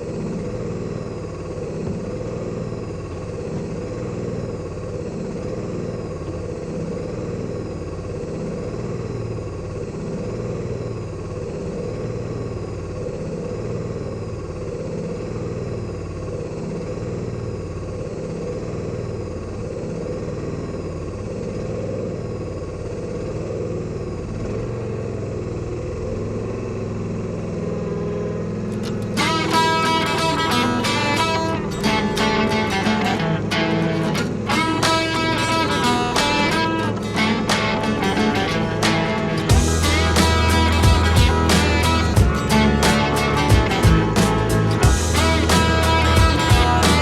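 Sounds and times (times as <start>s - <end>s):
vehicle engine running: 0.0s - 47.0s
acoustic guitar music: 28.7s - 47.0s.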